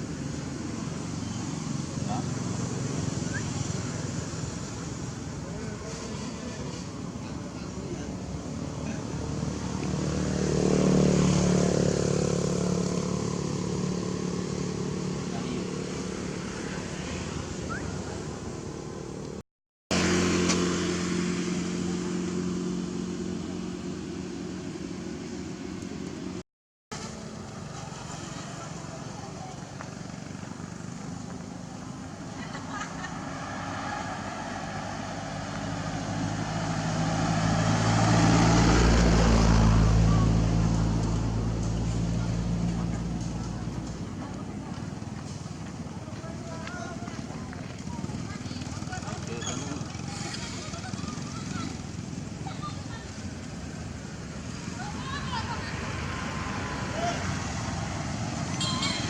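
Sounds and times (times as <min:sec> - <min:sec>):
vehicle engine approaching: 0:00.0 - 0:26.4, 0:27.0 - 0:59.0
vehicle engine running: 0:34.5 - 0:59.0.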